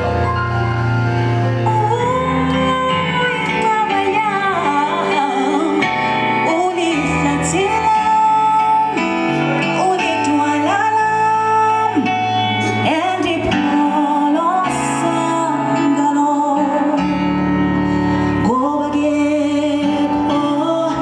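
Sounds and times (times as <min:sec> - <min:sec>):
sustained bass notes: 0:00.0 - 0:04.9
guitar: 0:00.0 - 0:21.0
person singing: 0:00.0 - 0:21.0.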